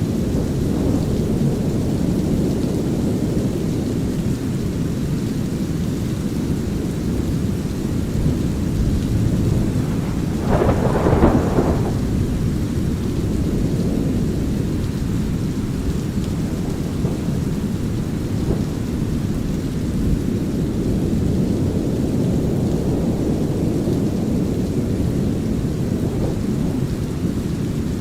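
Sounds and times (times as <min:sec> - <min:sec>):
brown-noise rumble: 0:00.0 - 0:28.0
light rain: 0:00.0 - 0:28.0
thunder: 0:07.3 - 0:28.0.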